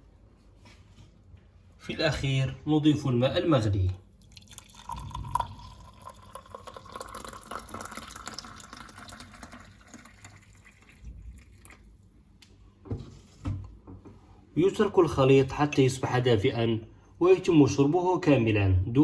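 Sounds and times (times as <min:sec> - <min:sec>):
water pouring into a cup: 0:04.1 - 0:12.0.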